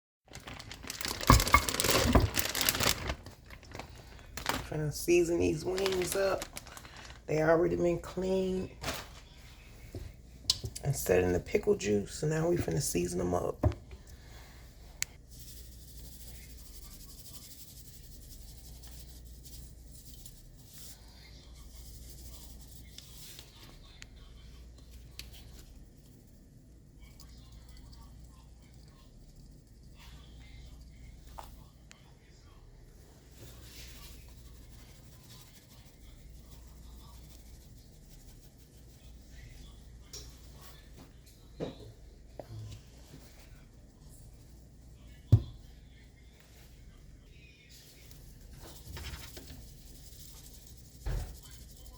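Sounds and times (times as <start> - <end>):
scratchy rustling of seasoning meat: 0.3 - 11.1, 14.0 - 31.7, 32.8 - 41.3, 42.6 - 51.9
seasoning shaken onto chicken: 14.8 - 24.0, 33.2 - 41.0, 47.7 - 51.9.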